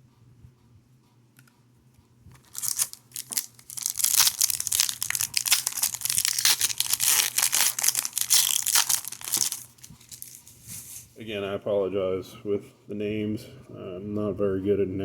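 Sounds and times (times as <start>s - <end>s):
foil wrapper tearing and crinkling: 2.4s - 10.5s.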